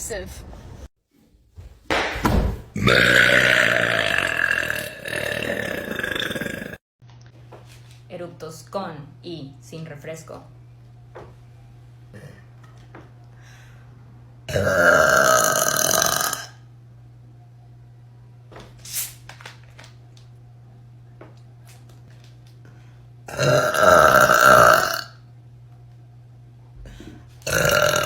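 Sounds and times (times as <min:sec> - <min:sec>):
woman burping loudly: 0:02.8 - 0:06.8, 0:14.5 - 0:16.6, 0:23.3 - 0:25.2, 0:27.4 - 0:28.0.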